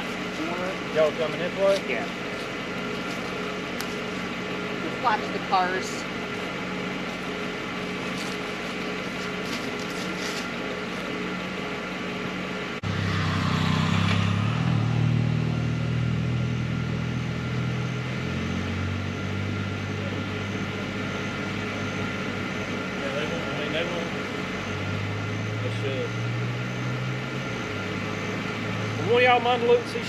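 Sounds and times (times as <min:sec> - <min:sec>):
deeper engine roar: 0:00.0 - 0:30.0
engine hum: 0:00.0 - 0:30.0.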